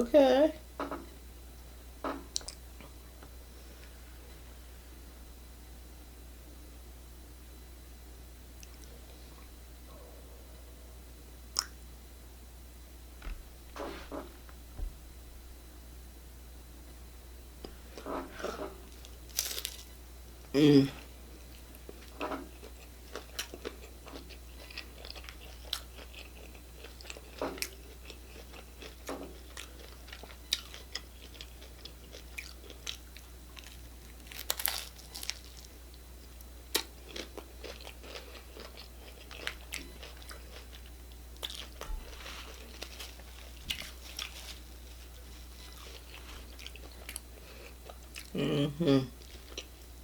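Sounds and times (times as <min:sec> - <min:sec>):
low electrical hum: 0:00.0 - 0:50.0
crunching taco shells: 0:18.9 - 0:20.0, 0:21.5 - 0:48.4
chewing: 0:22.4 - 0:35.7, 0:36.7 - 0:44.6, 0:45.6 - 0:48.4.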